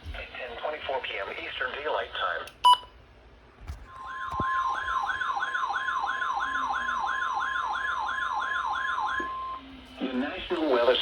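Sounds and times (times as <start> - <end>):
steady high alarm tone: 3.9 - 9.7.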